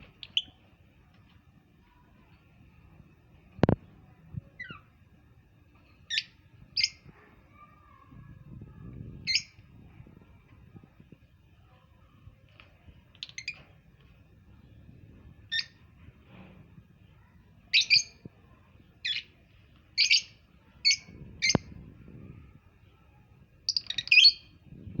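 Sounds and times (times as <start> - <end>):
parrot chirping: 0.2 - 0.6, 13.2 - 13.6, 17.7 - 18.2, 19.0 - 19.3, 20.0 - 21.6, 23.7 - 24.5.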